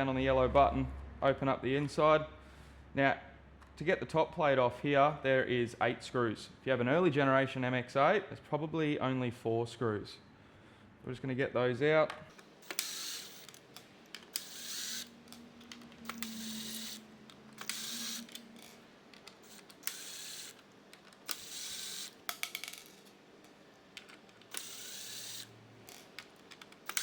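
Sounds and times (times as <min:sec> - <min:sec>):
screwdriver turning screws: 0:12.3 - 0:27.0
sharp clicks: 0:12.3 - 0:27.0.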